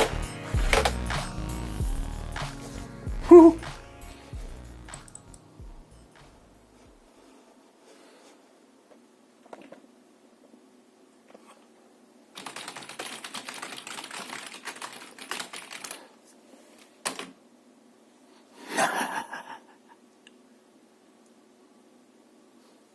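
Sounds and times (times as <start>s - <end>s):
rapid typing on keyboard: 12.4s - 16.2s.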